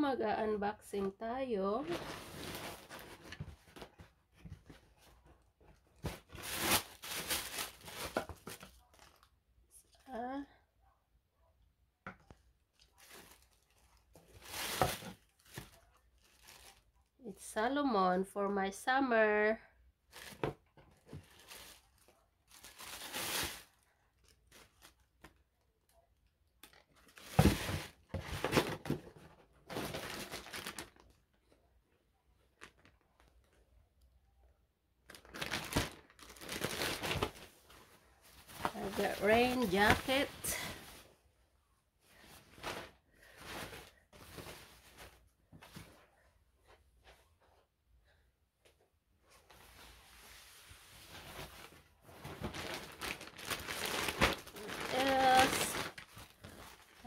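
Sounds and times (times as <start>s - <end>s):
packaging rustling and tearing: 1.8s - 4.1s, 5.8s - 9.3s, 12.8s - 16.9s, 20.1s - 25.4s, 29.6s - 31.2s, 35.1s - 37.6s, 51.1s - 57.0s.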